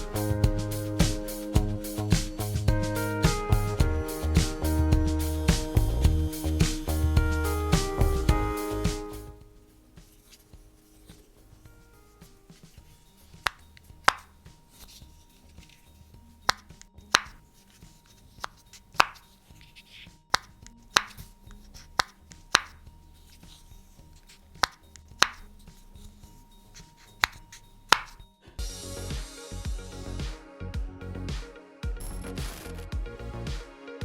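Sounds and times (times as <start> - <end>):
faint background music: 0.0 - 34.0
pop-it fidget toy popping: 16.5 - 17.4, 20.3 - 21.2, 24.6 - 25.5, 27.2 - 28.2.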